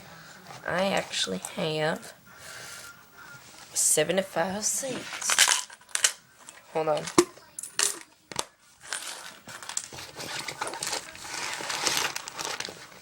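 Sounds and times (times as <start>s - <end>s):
bag rustling and crinkling: 8.7s - 13.0s.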